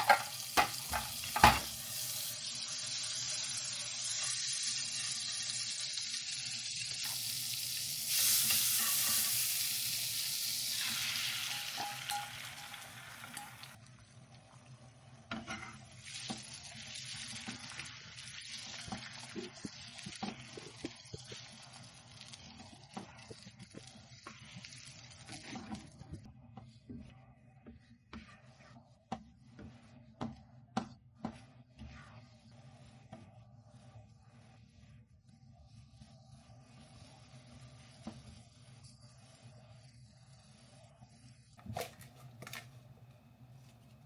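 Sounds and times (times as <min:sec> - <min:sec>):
utensil tapping a pan: 0:00.0 - 0:01.8, 0:11.5 - 0:13.8
food sizzling in a pan: 0:00.0 - 0:13.8, 0:14.5 - 0:26.0.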